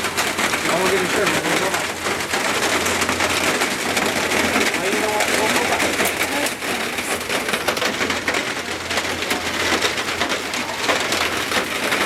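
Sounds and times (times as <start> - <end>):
heavy rain pelting down: 0.0 - 12.0.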